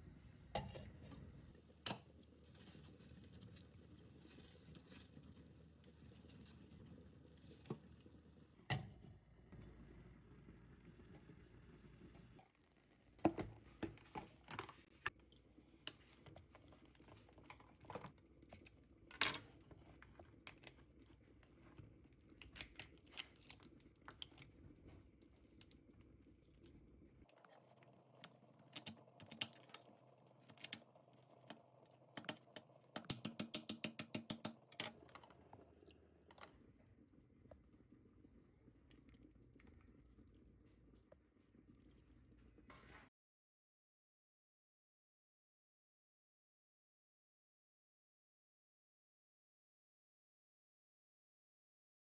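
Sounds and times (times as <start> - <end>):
utensils clicking and knocking: 32.2 - 35.4.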